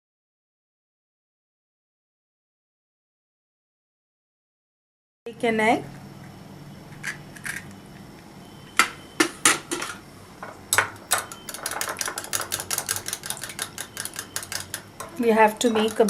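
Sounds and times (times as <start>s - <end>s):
fork whisking egg in bowl: 11.1s - 16.0s.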